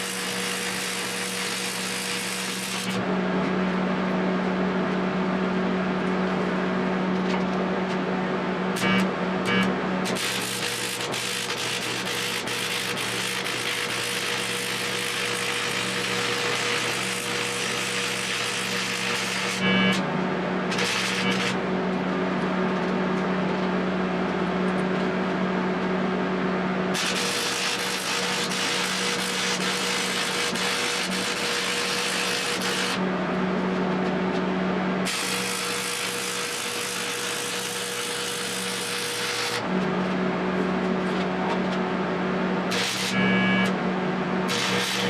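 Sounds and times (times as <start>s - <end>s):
welding arc hiss and crackle: 0.0s - 3.0s, 8.8s - 20.0s, 20.7s - 21.6s, 27.0s - 33.0s, 35.0s - 39.7s, 44.5s - 45.0s
arc welder humming: 0.0s - 4.8s, 5.4s - 25.0s, 26.0s - 41.8s, 42.5s - 45.0s.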